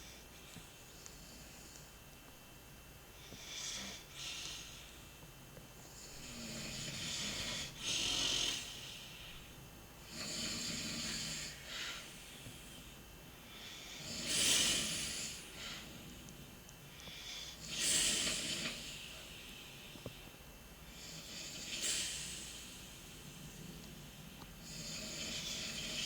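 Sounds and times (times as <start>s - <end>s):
person snoring: 14.0s - 15.9s, 24.6s - 26.0s.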